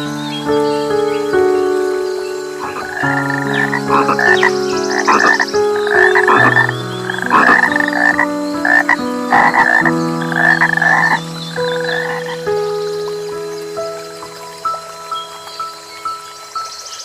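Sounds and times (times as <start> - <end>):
background music with held notes: 0.0 - 17.0
frogs croaking: 0.0 - 17.0.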